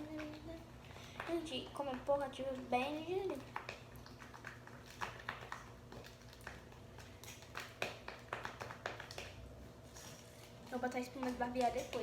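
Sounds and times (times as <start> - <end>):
slime squelching and clicking: 0.0 - 12.0.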